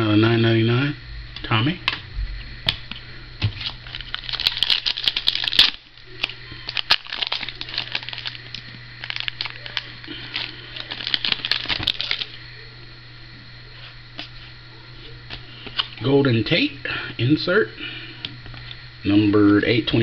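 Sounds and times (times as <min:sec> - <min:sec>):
steady low hum: 0:00.0 - 0:20.0
card pack wrapper crinkling: 0:03.6 - 0:12.4.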